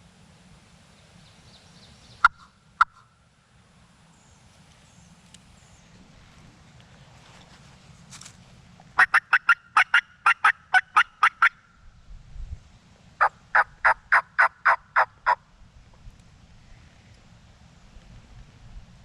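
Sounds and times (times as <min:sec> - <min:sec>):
turkey call hen yelps: 0:02.2 - 0:03.1, 0:09.0 - 0:11.7, 0:13.2 - 0:15.4.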